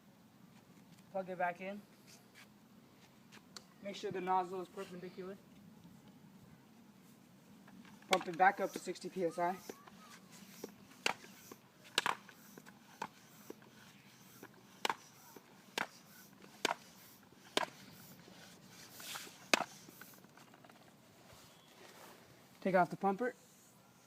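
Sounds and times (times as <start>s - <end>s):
hand air pump clicking: 7.7s - 20.8s
air hissing: 8.5s - 20.2s.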